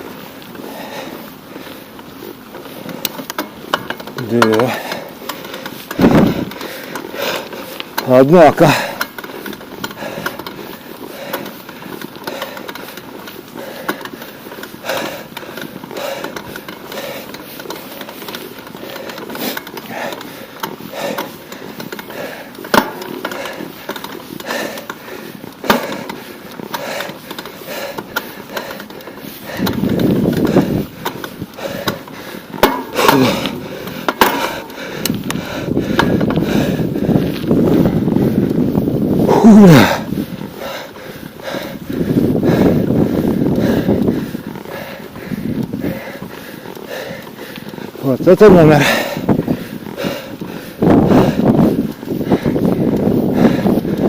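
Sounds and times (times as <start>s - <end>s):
bicycle clicks and rattles: 0.0s - 54.0s
wind and road noise: 0.0s - 54.0s.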